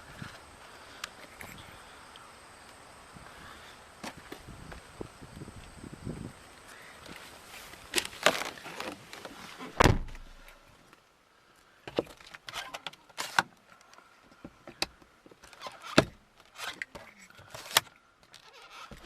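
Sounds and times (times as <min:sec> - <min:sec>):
car door slamming: 0:09.8 - 0:10.3.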